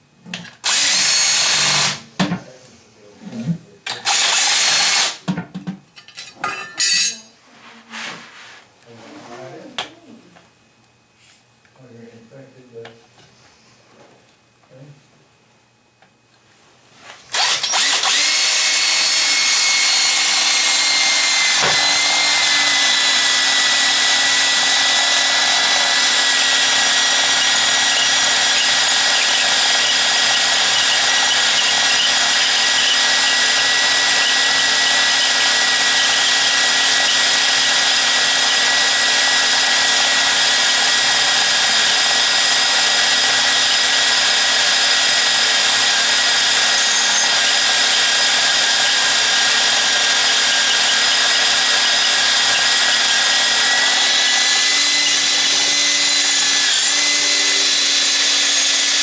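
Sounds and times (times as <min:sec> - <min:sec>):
electric drill whining: 0:00.4 - 0:02.1, 0:03.9 - 0:05.2, 0:17.3 - 0:59.0.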